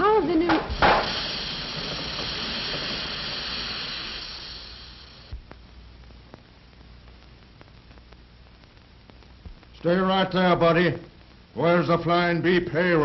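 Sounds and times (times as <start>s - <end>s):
hiss like rushing air: 0.6s - 5.4s
faint ticks: 5.3s - 9.8s.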